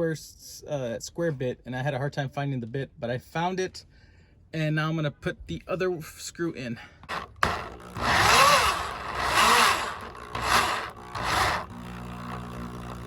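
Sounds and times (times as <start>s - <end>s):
power drill whining: 7.0s - 13.0s.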